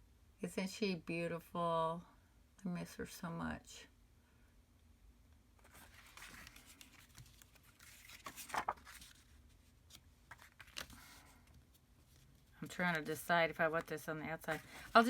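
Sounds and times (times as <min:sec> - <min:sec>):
paper rustling: 0:05.6 - 0:15.0.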